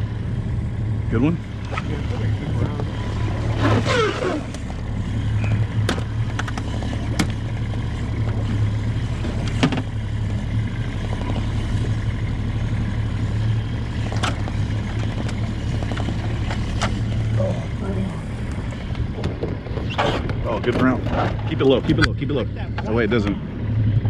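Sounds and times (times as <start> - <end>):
outboard motor humming: 0.0 - 24.0
sharp clicks and knocks: 5.8 - 7.6.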